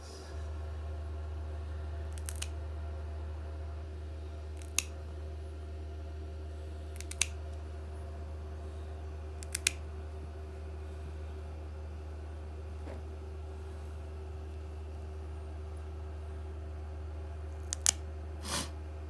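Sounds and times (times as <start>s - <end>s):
steady low hum: 0.0s - 19.0s
nail clippers clicking: 2.1s - 2.5s, 4.6s - 4.9s, 6.9s - 7.4s, 9.4s - 9.8s, 17.6s - 18.7s.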